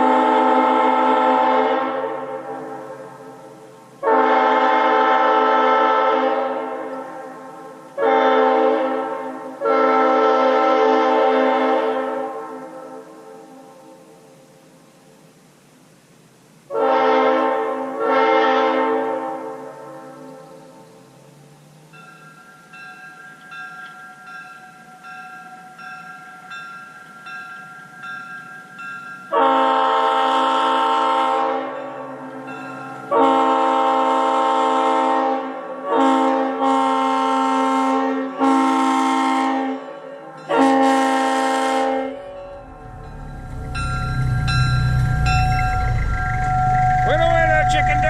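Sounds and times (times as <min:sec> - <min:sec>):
locomotive air horn blasts: 0:00.0 - 0:07.3, 0:08.0 - 0:12.7, 0:16.7 - 0:20.4, 0:29.3 - 0:39.9, 0:40.5 - 0:48.0.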